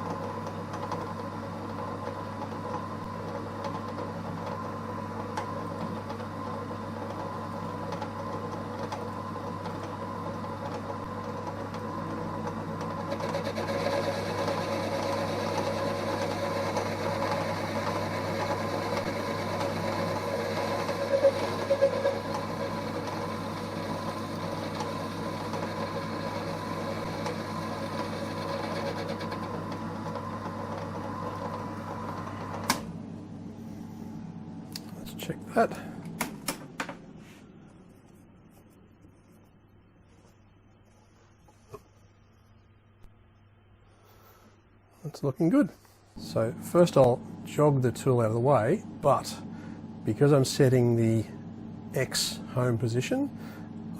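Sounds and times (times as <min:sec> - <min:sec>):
lathe cutting metal: 0:12.4 - 0:32.7.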